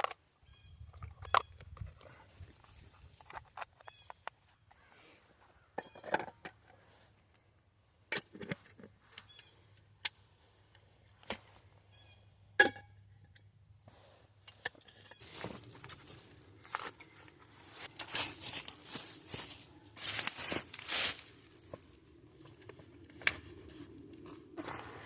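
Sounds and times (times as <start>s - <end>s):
objects clicking and knocking: 2.6s - 4.4s
rustling: 13.9s - 22.6s.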